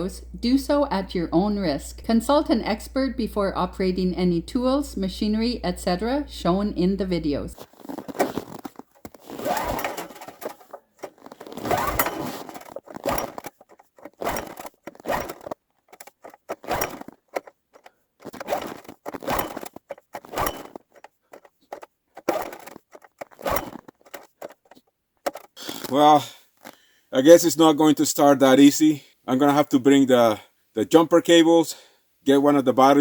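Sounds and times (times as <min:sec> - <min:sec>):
engine cranking without starting: 0:07.7 - 0:26.3.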